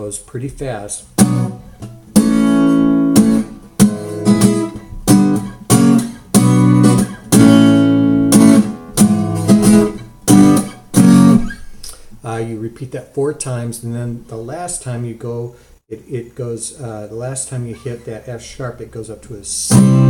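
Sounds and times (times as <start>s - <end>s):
guitar strumming chords: 1.0s - 12.3s, 19.7s - 20.0s.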